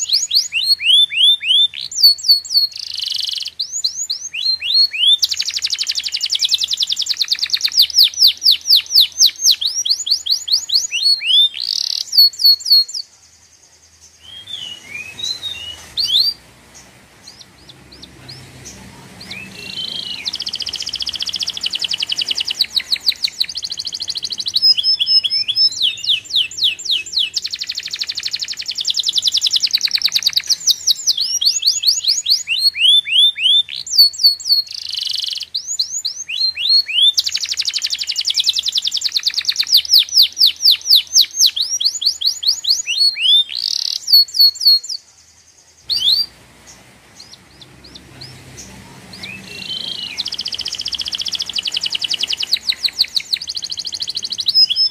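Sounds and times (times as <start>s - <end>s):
bird trilling: 0.0s - 13.0s, 14.2s - 45.0s, 45.9s - 54.9s.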